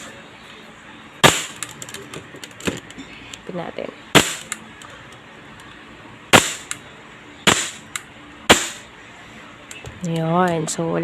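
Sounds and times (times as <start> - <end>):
airsoft pistol shots: 1.2 - 1.7, 4.1 - 4.6, 6.3 - 6.8, 7.4 - 8.9.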